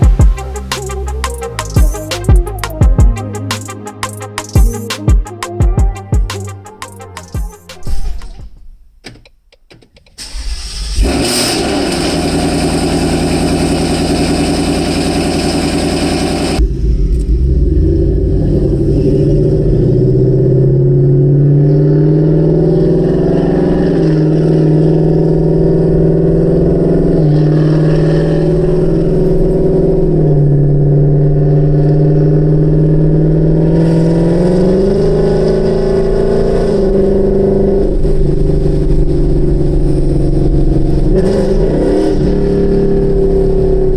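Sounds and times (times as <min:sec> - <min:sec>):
car engine starting and idling: 0:10.1 - 0:21.4.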